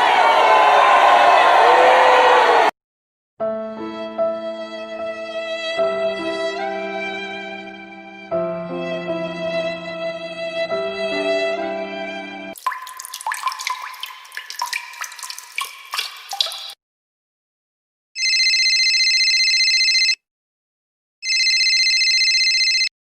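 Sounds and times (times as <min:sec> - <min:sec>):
water dripping and plinking: 0:12.6 - 0:16.8
electronic telephone ringer: 0:18.2 - 0:20.2, 0:21.2 - 0:22.9.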